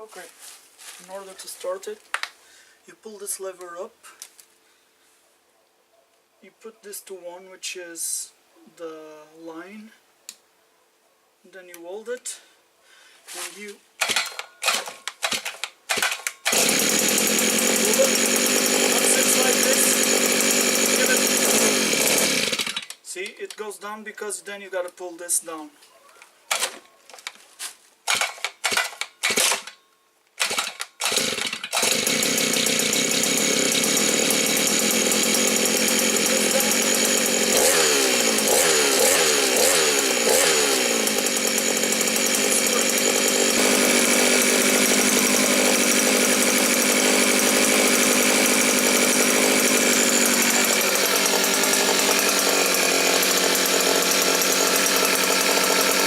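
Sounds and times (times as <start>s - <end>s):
brushcutter engine sputtering and running: 13.4s - 23.0s, 28.1s - 29.7s, 30.4s - 56.0s.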